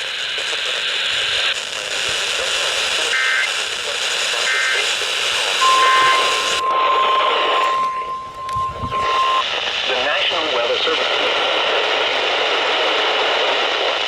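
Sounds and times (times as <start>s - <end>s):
radio static hiss: 0.0s - 14.0s
steady alert tone: 5.6s - 9.4s
warbling data bursts: 5.6s - 9.4s.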